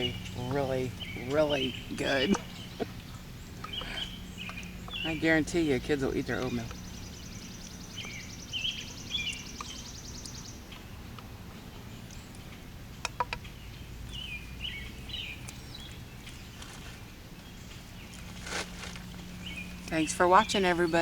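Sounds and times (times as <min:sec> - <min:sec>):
birds chirping: 0:00.0 - 0:21.0
low background hum: 0:00.0 - 0:21.0.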